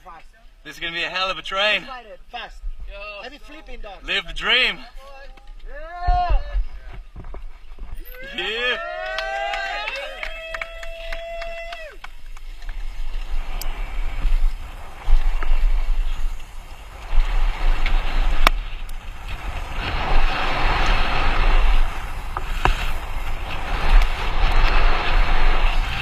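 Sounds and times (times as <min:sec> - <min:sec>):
wind buffeting microphone: 0:09.2 - 0:26.0
rushing hiss: 0:11.8 - 0:26.0.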